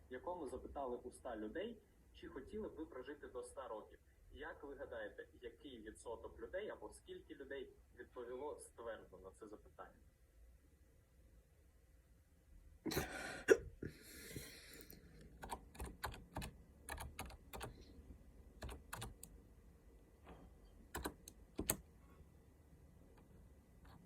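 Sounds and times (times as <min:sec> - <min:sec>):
person hiccuping: 0:12.9 - 0:13.9
breathy outbreath: 0:13.0 - 0:15.2
keyboard typing: 0:15.2 - 0:17.9, 0:18.6 - 0:19.3, 0:20.9 - 0:21.9, 0:23.2 - 0:24.0.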